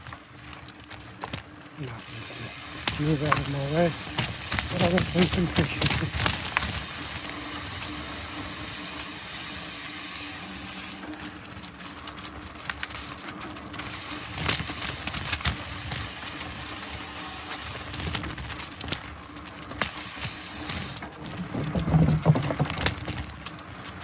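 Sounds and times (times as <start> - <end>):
bike rattling over bumps: 0.0 - 24.0
bike tyres on dirt: 0.0 - 24.0.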